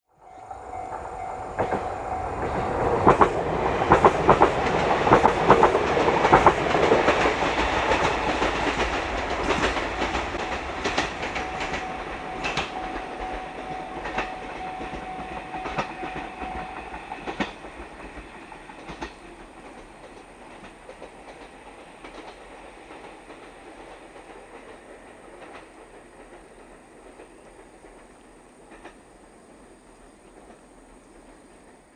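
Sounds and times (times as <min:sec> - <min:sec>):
train wheels clacking over rail joints: 0:00.6 - 0:31.9.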